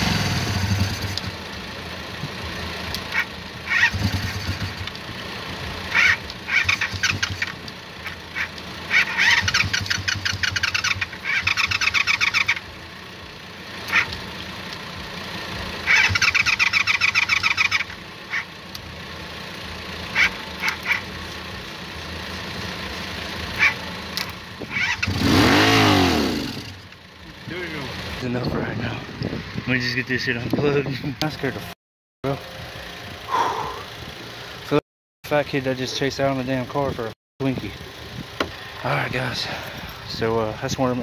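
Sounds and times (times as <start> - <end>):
motorcycle engine revving: 0.0 - 31.8
motorcycle starter cranking: 6.0 - 7.6, 9.0 - 12.6.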